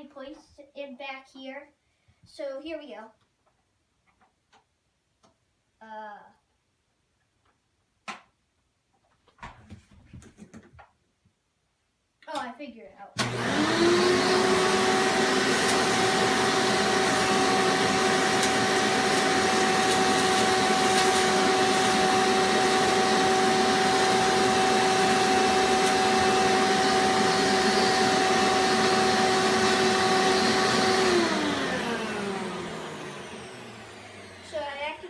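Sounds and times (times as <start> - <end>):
vacuum cleaner whining: 13.2 - 35.0.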